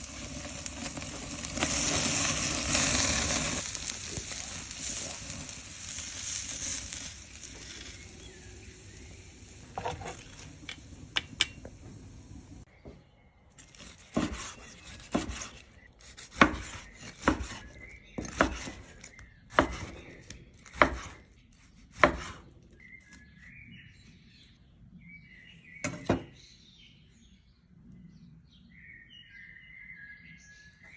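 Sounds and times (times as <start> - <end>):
meat sizzling: 0.0 - 12.7
birds chirping faintly: 4.0 - 30.9
chopping on a cutting board: 13.8 - 21.2, 21.9 - 22.4.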